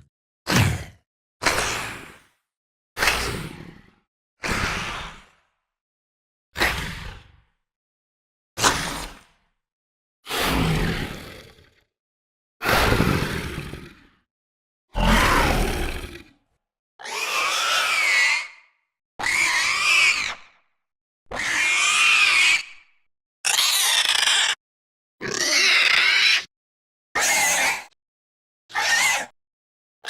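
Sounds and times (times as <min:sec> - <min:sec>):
creature screeches and growls: 0:14.9 - 0:16.3, 0:17.0 - 0:18.6, 0:19.2 - 0:20.4, 0:21.3 - 0:22.7, 0:23.4 - 0:24.6, 0:25.2 - 0:26.5, 0:27.2 - 0:27.9, 0:28.7 - 0:29.3.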